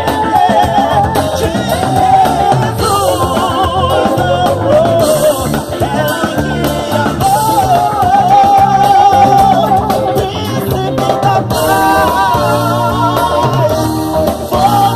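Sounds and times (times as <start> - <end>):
live band music: 0.0 - 14.9
gliding lead melody: 11.2 - 14.9.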